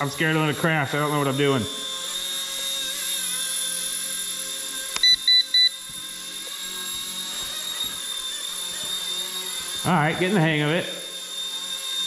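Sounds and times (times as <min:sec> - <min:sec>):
rc helicopter whine: 0:00.0 - 0:12.0
click: 0:04.9 - 0:05.2
short electronic beeps: 0:05.0 - 0:05.8.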